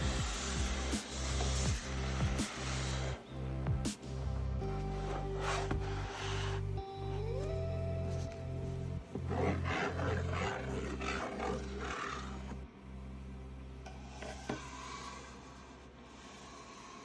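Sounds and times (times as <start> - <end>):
background music with bass line: 0.0 - 16.1
rough rasping rustling noise: 9.2 - 12.6.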